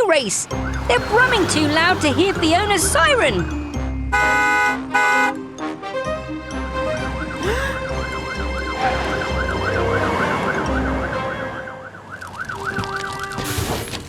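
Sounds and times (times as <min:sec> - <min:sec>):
cartoon truck engines rumbling: 0:00.0 - 0:14.0
light background music: 0:00.4 - 0:12.1.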